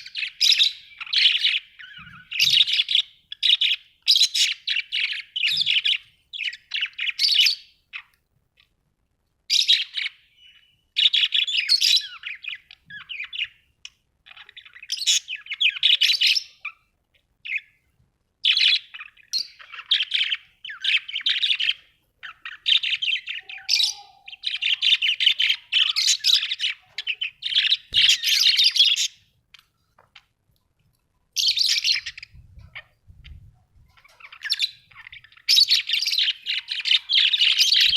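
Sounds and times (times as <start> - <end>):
budgerigars chattering: 18.4 - 29.2, 31.4 - 37.9.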